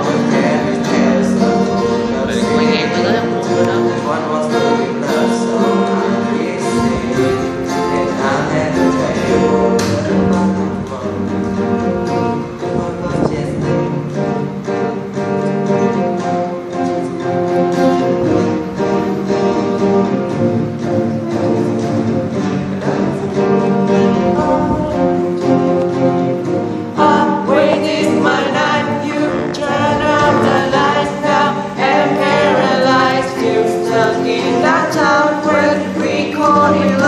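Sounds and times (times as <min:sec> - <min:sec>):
pop song with singing: 0:00.0 - 0:13.8, 0:24.0 - 0:25.5, 0:26.9 - 0:37.0.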